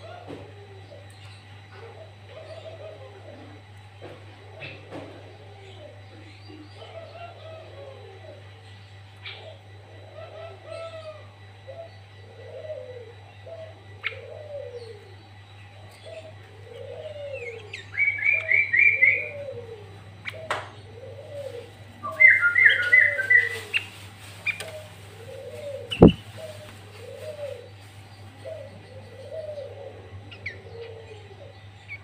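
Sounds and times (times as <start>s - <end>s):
dove cooing: 0.0s - 32.0s
low steady hum: 0.0s - 32.0s
bird chirping: 25.9s - 26.2s.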